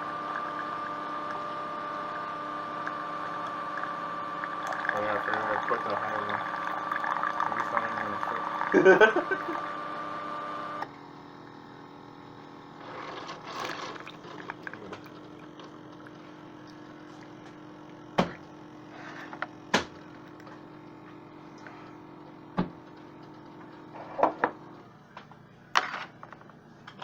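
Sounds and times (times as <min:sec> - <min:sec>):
liquid running: 0:00.0 - 0:10.8, 0:12.8 - 0:24.8
coffee maker humming: 0:00.0 - 0:27.0.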